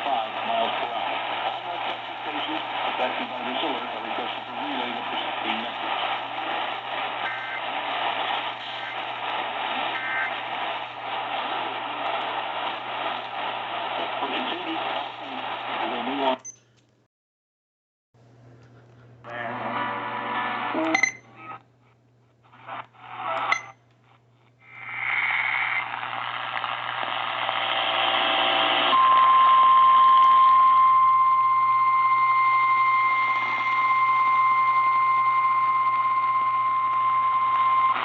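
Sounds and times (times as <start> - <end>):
radio hiss: 0.0 - 16.4, 22.4 - 23.7, 24.6 - 29.2, 33.1 - 38.0
radio clicks: 0.3 - 3.3, 3.9 - 14.2.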